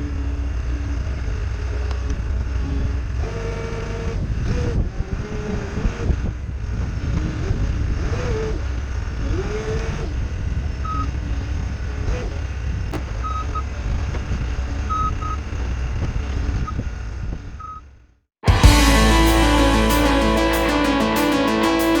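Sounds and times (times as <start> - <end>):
diesel engine under load: 0.0 - 18.0
backup alarm beep: 13.0 - 13.6.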